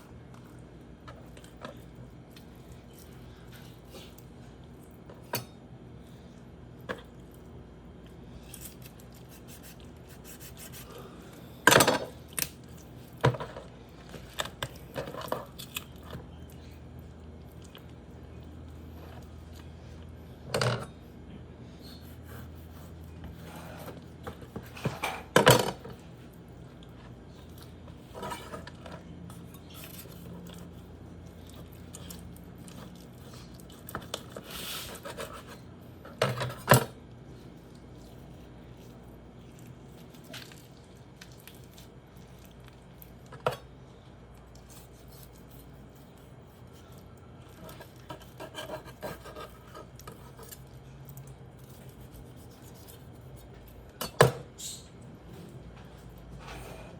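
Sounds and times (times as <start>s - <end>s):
knife scraping on cutting board: 21.9s - 25.3s, 47.6s - 50.6s.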